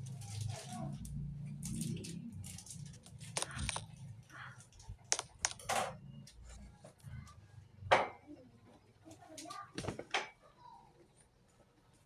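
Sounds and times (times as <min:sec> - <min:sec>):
faint low hum: 0:00.0 - 0:09.6.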